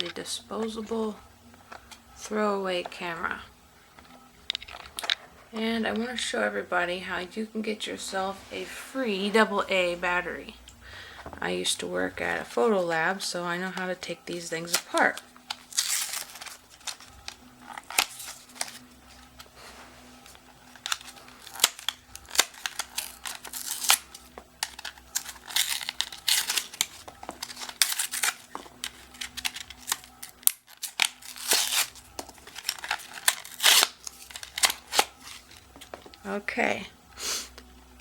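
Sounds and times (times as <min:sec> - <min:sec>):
cover tearing and crinkling: 0:14.7 - 0:19.4, 0:20.6 - 0:35.9.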